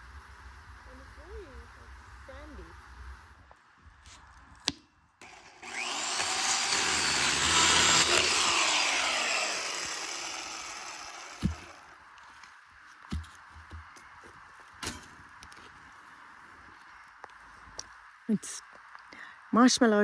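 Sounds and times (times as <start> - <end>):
motor passing by: 5.2 - 11.9.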